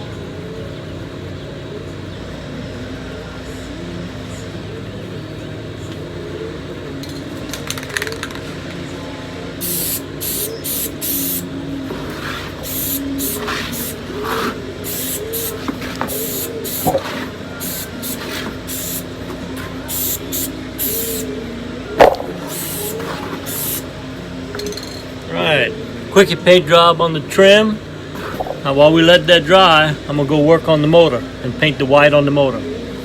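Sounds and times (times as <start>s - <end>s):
spray paint can hissing: 9.6s - 19.2s, 19.8s - 21.3s, 22.0s - 23.9s.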